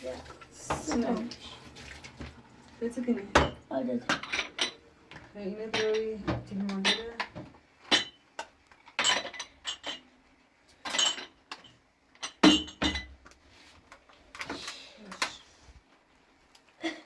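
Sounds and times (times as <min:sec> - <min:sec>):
dishes and glasses clinking: 0:03.3 - 0:08.2, 0:08.9 - 0:10.1, 0:10.8 - 0:13.2.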